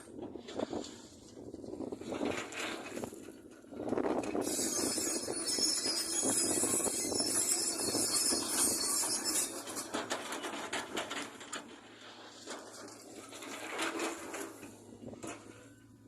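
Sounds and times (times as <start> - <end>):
excavator engine hum: 0.0 - 16.0
clattering clicks and knocks: 9.6 - 15.6.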